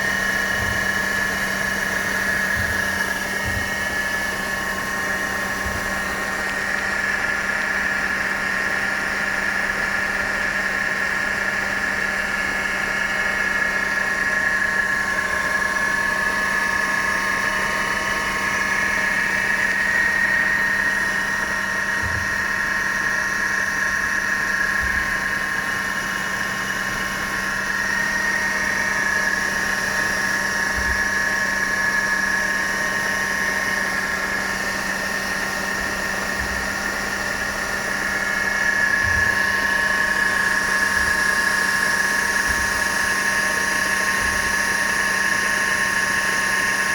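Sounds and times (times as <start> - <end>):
high-pitched supercharger whine: 0.0 - 46.9
car engine idling: 12.4 - 46.9.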